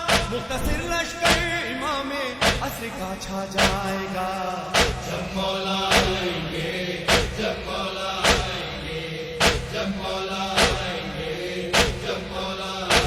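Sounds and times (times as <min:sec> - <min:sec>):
person chanting a lament: 0:00.0 - 0:07.8
heavy beat of strikes: 0:00.1 - 0:01.8.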